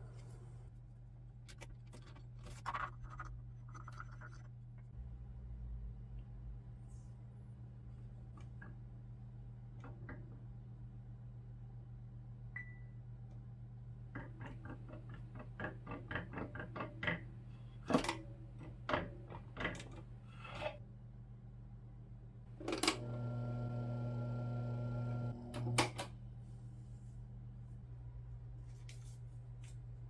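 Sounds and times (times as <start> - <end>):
fan motor hum: 22.5 - 26.8.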